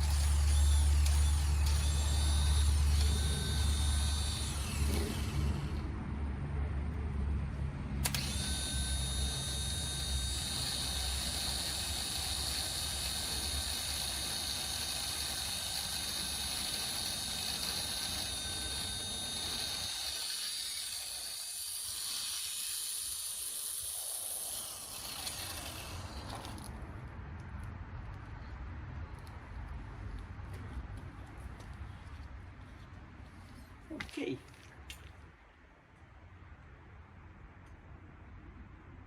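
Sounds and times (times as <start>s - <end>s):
machine motor whining over hiss: 0.0s - 5.8s, 8.0s - 26.6s.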